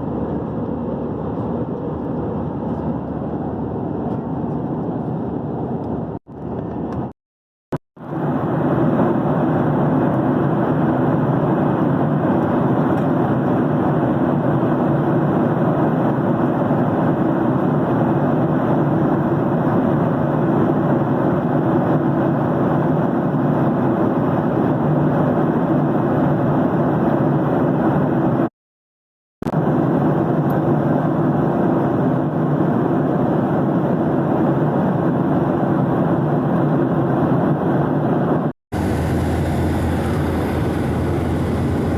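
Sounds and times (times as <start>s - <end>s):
airplane cabin rushing hiss: 38.8s - 41.9s
low hum: 38.8s - 41.9s.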